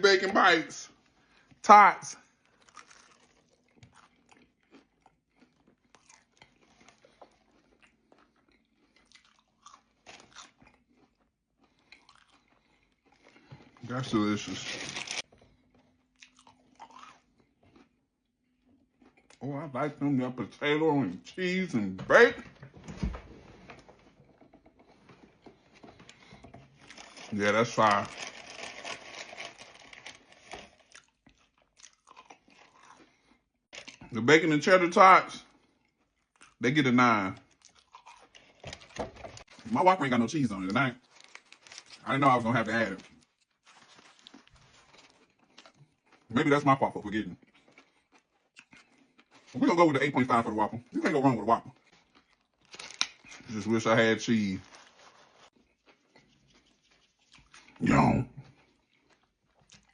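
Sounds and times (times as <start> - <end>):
close-up crunchy chewing: 2.2 - 19.5, 24.1 - 34.2, 35.4 - 36.6, 37.2 - 46.4, 47.0 - 50.4, 51.2 - 53.6, 54.6 - 59.9
person biting and chewing: 2.4 - 13.8, 15.8 - 18.0, 28.1 - 34.1, 37.5 - 39.6.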